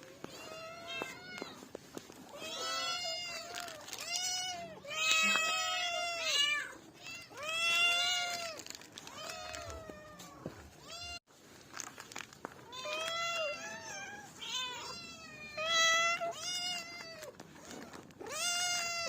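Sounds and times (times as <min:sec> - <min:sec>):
cat meowing: 0:02.3 - 0:11.2, 0:12.7 - 0:19.0.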